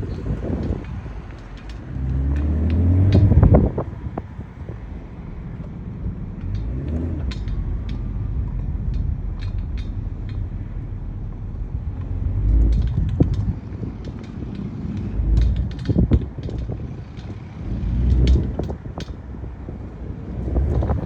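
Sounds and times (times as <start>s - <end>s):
car engine accelerating: 0.0s - 21.0s.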